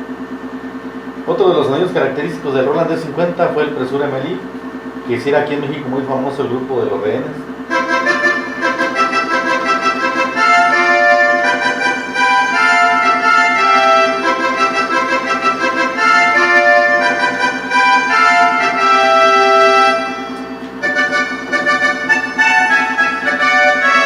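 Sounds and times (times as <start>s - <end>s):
fast pulsing synth accompaniment: 1.3s - 24.0s
synthesizer melody: 7.7s - 24.0s.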